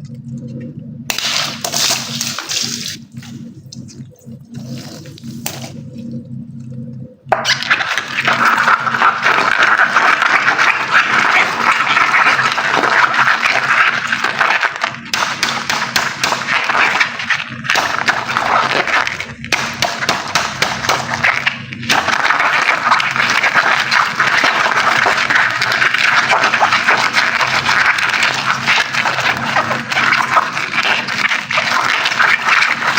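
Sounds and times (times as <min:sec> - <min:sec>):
water gushing and splashing: 0:07.5 - 0:15.1, 0:20.7 - 0:32.9.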